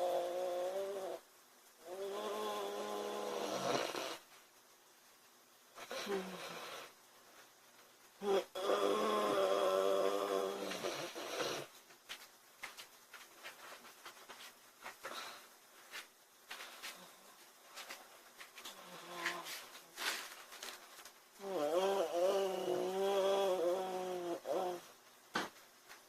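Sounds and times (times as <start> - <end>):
woman snoring: 0.0 - 1.2, 1.8 - 4.2, 5.8 - 6.9, 8.2 - 11.7, 18.7 - 19.6, 21.4 - 24.9.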